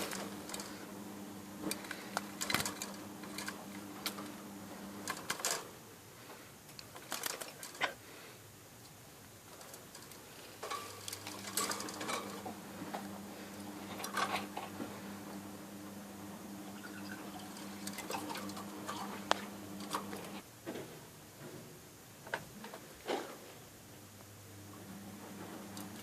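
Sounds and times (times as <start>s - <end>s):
steady low hum: 0.0s - 20.6s.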